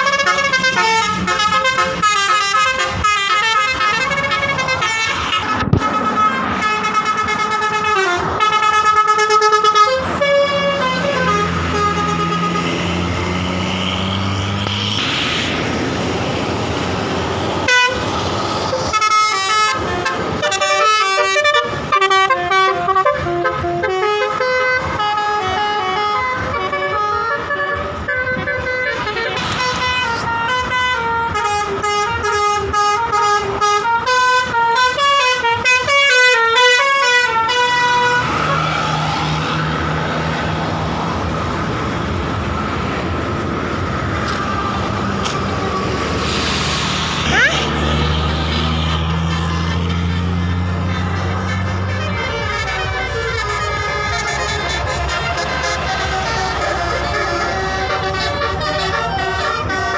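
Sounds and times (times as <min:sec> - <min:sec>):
bus musical horn tune: 0:00.0 - 0:14.0, 0:17.6 - 0:38.6, 0:49.1 - 0:59.9
bus engine and road noise: 0:00.0 - 0:59.9.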